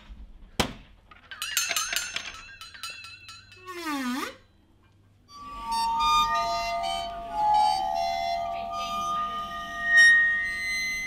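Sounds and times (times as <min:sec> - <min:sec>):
small clinks: 0:01.3 - 0:03.7
music with held notes: 0:05.3 - 0:11.0
wavering high squeaky tones: 0:05.3 - 0:11.0.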